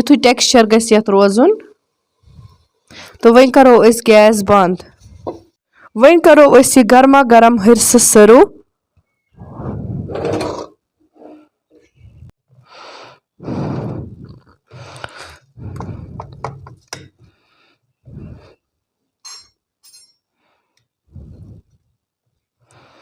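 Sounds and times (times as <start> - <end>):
metallic clinks: 19.2 - 20.3.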